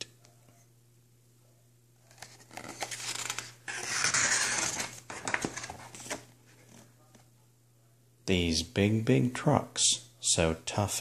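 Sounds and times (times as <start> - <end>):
book pages rustling: 2.0 - 7.2.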